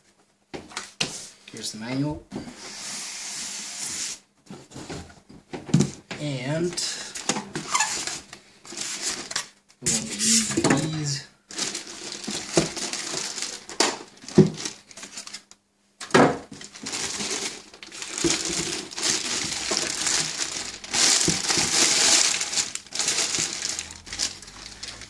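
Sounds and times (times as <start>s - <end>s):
plastic wrap crinkling: 7.0s - 15.6s, 16.5s - 25.0s.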